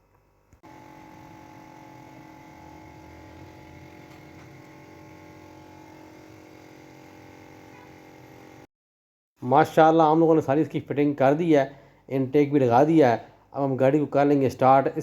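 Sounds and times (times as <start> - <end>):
mechanical hum with held tones: 0.0 - 8.7.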